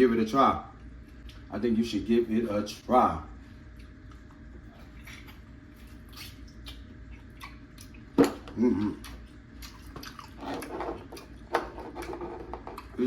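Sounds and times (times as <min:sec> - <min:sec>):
person chewing with wet smacks: 0:00.8 - 0:01.5, 0:03.6 - 0:11.4, 0:12.7 - 0:13.0
person humming mm: 0:08.5 - 0:09.2.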